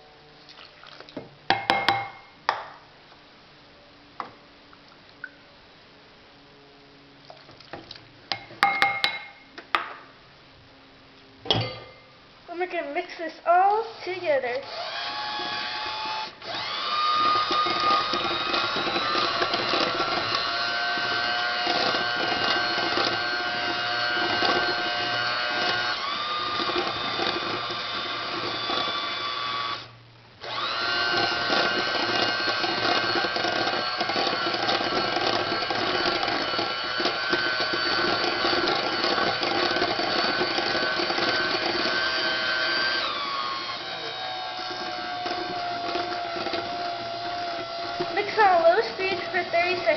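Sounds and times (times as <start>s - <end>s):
electric hand mixer whine: 13.9s - 49.9s.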